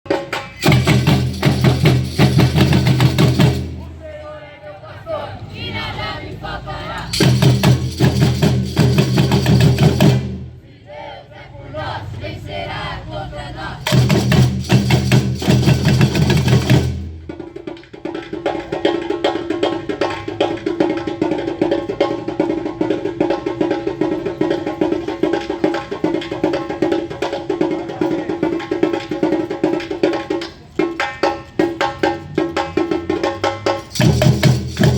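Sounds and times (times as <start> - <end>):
voices: 3.7 - 7.5, 10.6 - 14.1.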